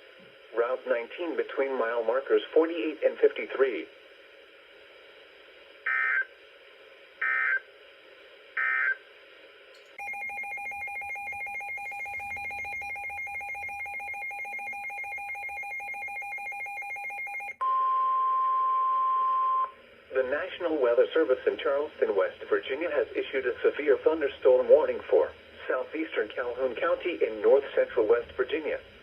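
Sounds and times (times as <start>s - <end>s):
steady warning tone: 7.2s - 7.7s, 8.6s - 9.0s, 10.0s - 25.1s.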